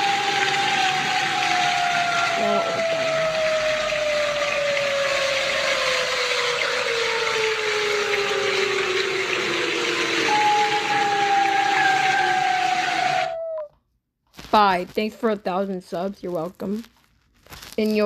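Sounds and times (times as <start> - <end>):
warning siren wailing: 0.0 - 13.7.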